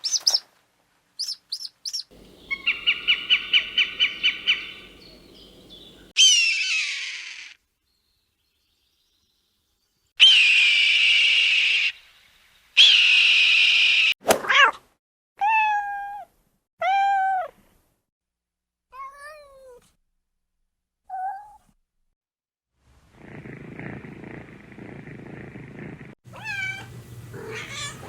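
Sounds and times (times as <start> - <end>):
harsh hissy cat calls: 2.1 - 7.6, 26.3 - 28.0
cat meowing: 26.3 - 28.0.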